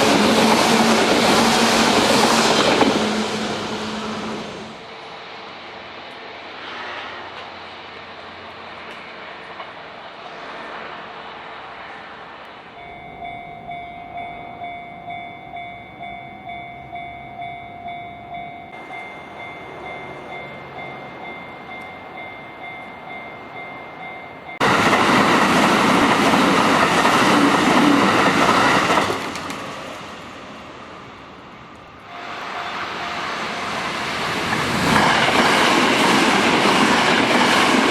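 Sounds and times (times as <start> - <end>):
electric train passing: 0.0 - 37.9
level crossing bell clanging: 12.7 - 24.9, 32.1 - 34.5.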